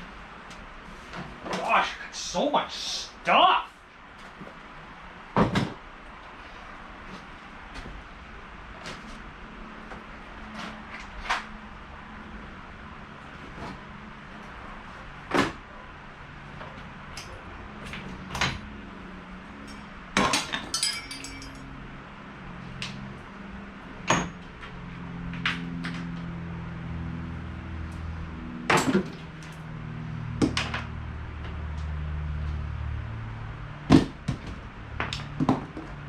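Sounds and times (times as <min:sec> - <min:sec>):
low background hum: 0:00.0 - 0:36.0
tools knocking and clanking: 0:19.7 - 0:21.6
ringing metallic clinks: 0:20.7 - 0:21.7.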